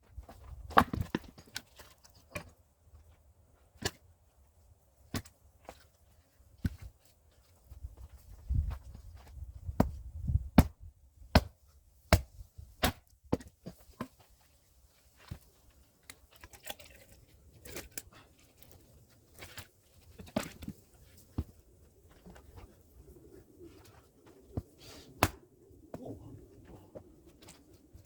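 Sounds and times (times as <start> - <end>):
axe splitting firewood: 0.6 - 2.5.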